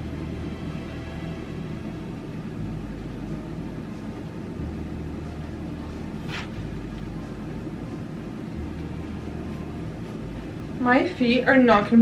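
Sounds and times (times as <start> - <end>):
low background music: 0.0 - 12.0.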